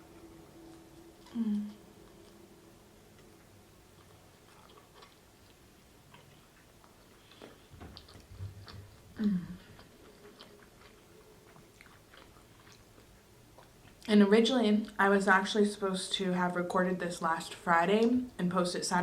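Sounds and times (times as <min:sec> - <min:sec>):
person chewing food: 0:00.2 - 0:14.1
person humming: 0:01.2 - 0:01.9, 0:09.2 - 0:09.8.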